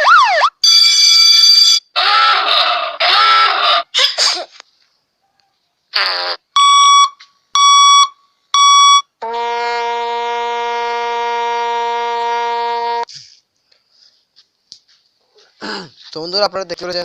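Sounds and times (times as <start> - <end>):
short beeps: 6.6 - 9.1
long buzzy tone: 6.6 - 13.1.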